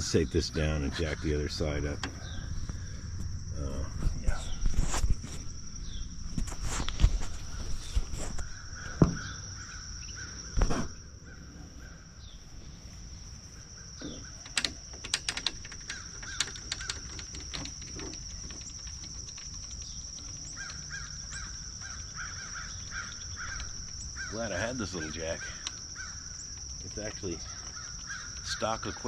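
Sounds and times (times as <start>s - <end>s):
high insect drone: 0.0s - 29.0s
crows cawing: 8.3s - 10.5s, 15.8s - 17.8s, 20.1s - 29.0s
quick clicks: 14.4s - 21.6s.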